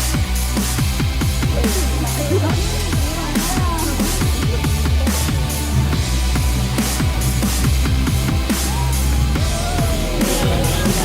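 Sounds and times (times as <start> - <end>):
electronic dance music: 0.0 - 11.0
pounding kick drum: 0.0 - 11.0.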